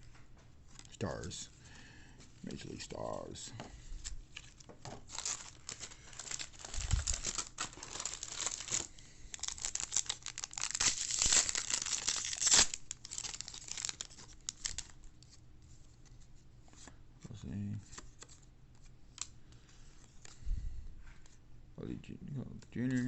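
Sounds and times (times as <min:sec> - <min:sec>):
card pack wrapper tearing: 0:04.4 - 0:15.0.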